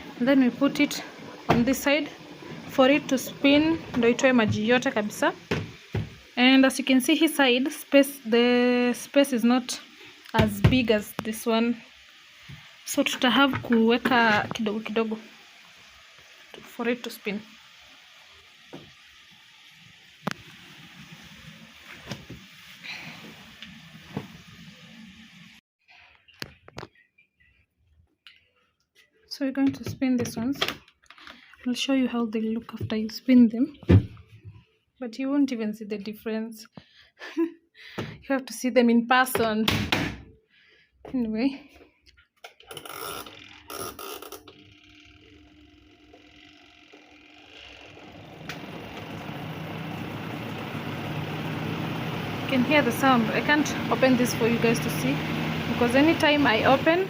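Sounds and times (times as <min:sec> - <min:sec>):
spin dryer motor humming: 0:00.0 - 0:18.0, 0:43.1 - 0:57.0
washing machine draining water: 0:00.0 - 0:25.5, 0:47.1 - 0:57.0
washing machine knocks and clatters: 0:01.4 - 0:01.8, 0:03.6 - 0:06.2, 0:10.4 - 0:10.9.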